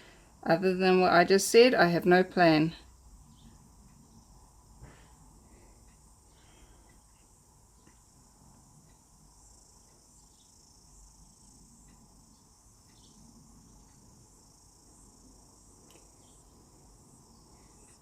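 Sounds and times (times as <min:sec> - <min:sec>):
faint high-pitched hiss: 0:00.0 - 0:18.0
soft ticks: 0:02.8 - 0:04.6, 0:05.8 - 0:16.5, 0:17.3 - 0:18.0.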